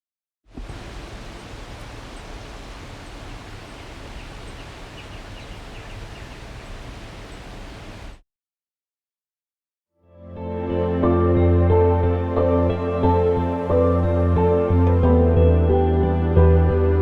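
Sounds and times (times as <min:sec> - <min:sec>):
rushing wind or water rumble: 0:00.5 - 0:08.2
bird chirping: 0:00.6 - 0:08.2.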